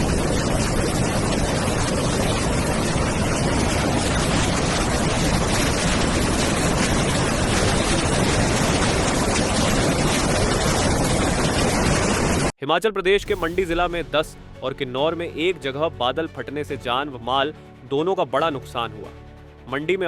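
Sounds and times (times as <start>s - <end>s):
floodwater rushing: 0.0s - 12.5s.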